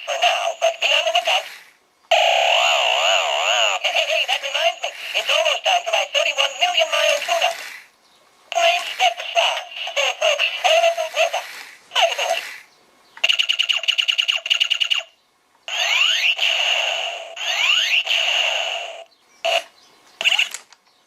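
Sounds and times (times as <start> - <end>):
warbling electronic toy sound: 0.0 - 7.8, 8.6 - 12.6, 13.2 - 15.1, 15.7 - 20.6
rapid electronic beeping: 13.2 - 15.1.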